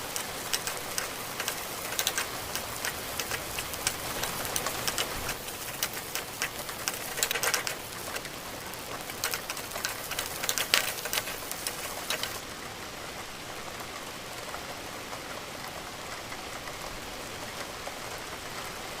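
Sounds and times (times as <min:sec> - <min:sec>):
noodles sizzling in a pan: 0:00.0 - 0:12.4.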